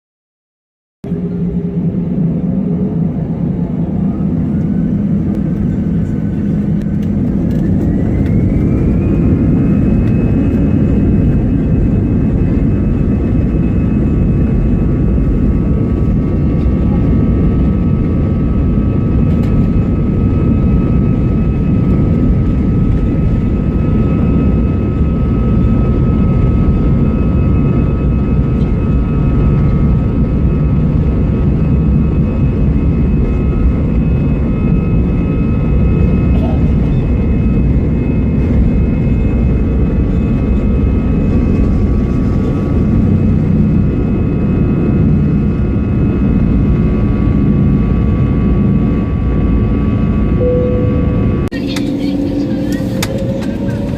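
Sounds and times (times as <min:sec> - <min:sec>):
jet engine whine rising: 0:01.0 - 0:53.9
loud constant engine rumble: 0:48.4 - 0:53.9.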